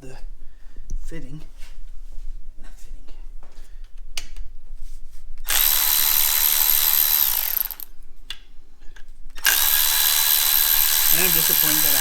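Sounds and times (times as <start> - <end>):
power tool high whine: 9.4 - 12.0.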